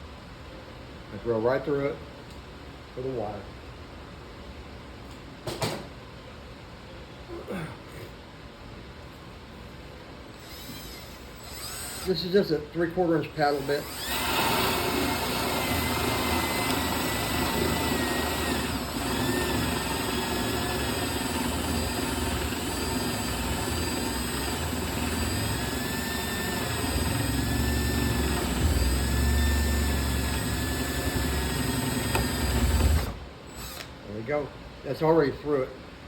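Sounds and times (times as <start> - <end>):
electric drill boring through wood: 10.4 - 12.1, 13.6 - 33.9.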